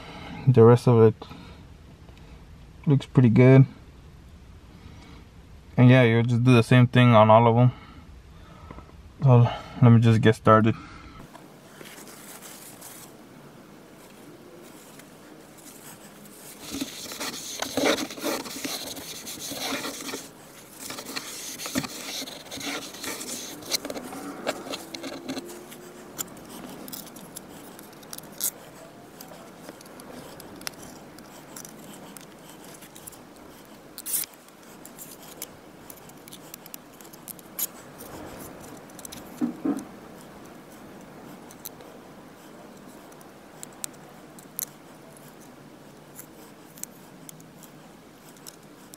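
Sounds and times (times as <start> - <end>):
rustling and scraping of trim: 11.6 - 13.2, 14.0 - 48.9.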